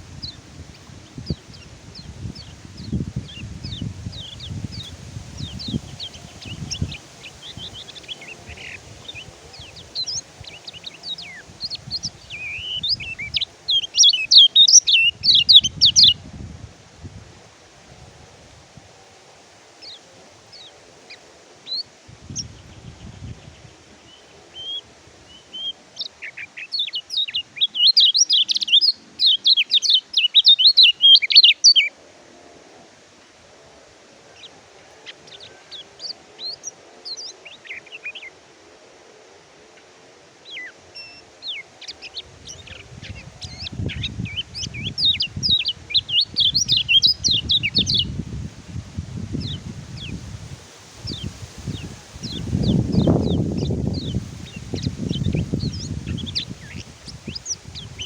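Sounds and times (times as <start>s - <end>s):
small bird singing and twittering: 0.0s - 16.2s, 19.8s - 31.9s, 40.5s - 48.3s, 49.3s - 50.3s, 51.0s - 58.0s.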